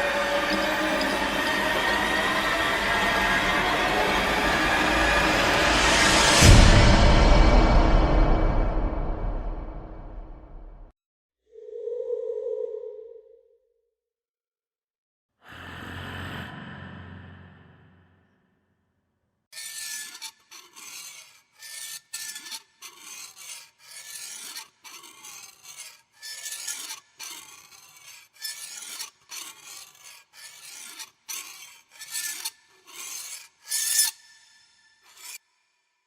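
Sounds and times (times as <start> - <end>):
rasping scrape strokes: 0.0 - 10.3, 19.6 - 35.5.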